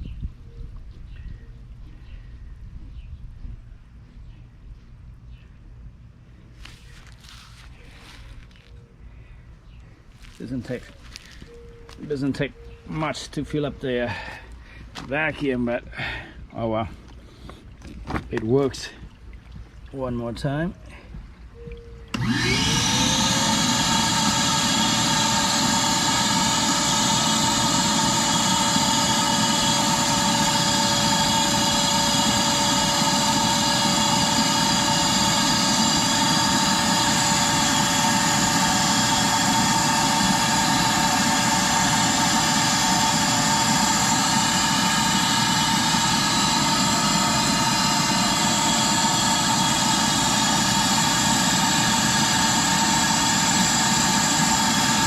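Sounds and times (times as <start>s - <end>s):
hose sucking water: 22.1s - 55.0s
vacuum motor whining: 22.1s - 55.0s.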